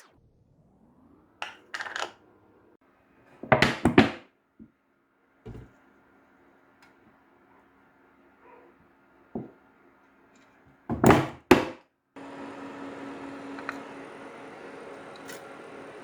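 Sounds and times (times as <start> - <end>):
faint steady hum: 12.2 - 16.0.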